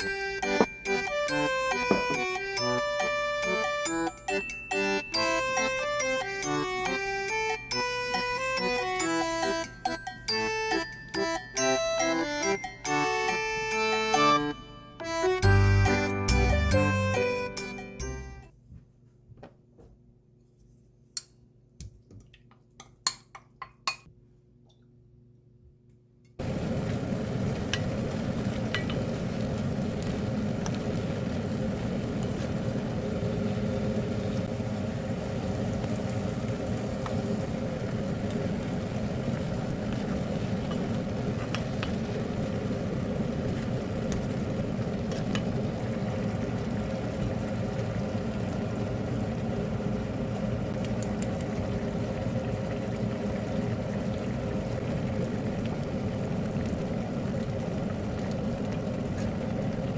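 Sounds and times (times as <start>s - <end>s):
faint hum: 24.1s - 59.9s
food cooking on stovetop: 26.4s - 59.9s.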